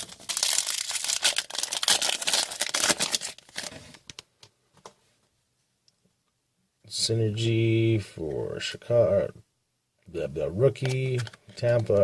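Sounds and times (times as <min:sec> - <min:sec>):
wrapper tearing and crinkling: 0:00.0 - 0:04.0.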